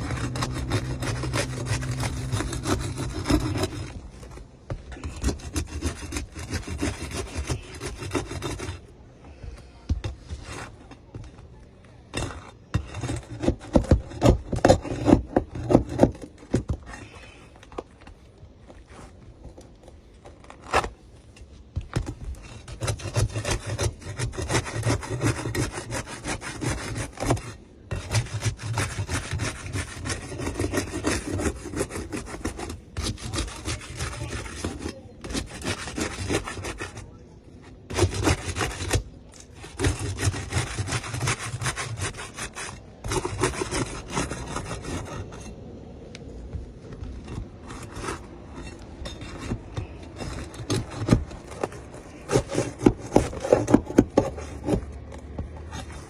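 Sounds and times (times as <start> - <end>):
saw cutting wood: 0.0 - 4.4, 5.0 - 8.9, 22.5 - 37.2, 37.8 - 45.5, 47.3 - 56.0.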